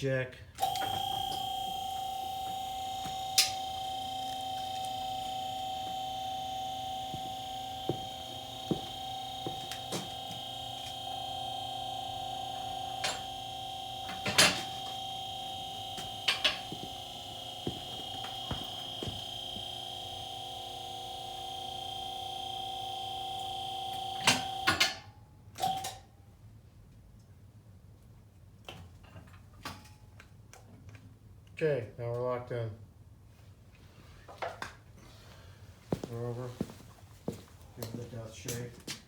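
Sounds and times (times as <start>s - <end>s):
sharp clicks: 0.6s - 24.8s
electric hydraulic pump humming: 0.6s - 24.9s.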